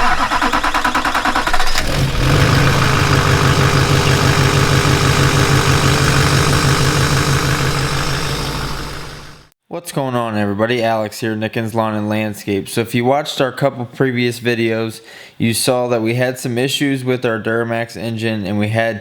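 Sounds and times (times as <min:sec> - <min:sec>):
diesel engine cranking and idling: 0:00.0 - 0:09.5.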